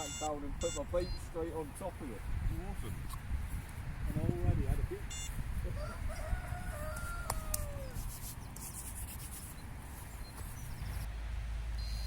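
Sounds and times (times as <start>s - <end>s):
wind rumbling on microphone: 0.4s - 8.6s.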